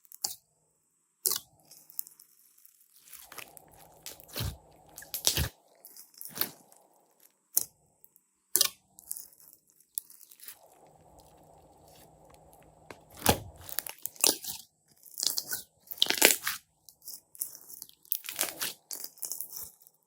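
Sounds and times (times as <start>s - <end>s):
slime crunching and popping: 3.0s - 6.8s, 8.5s - 19.8s.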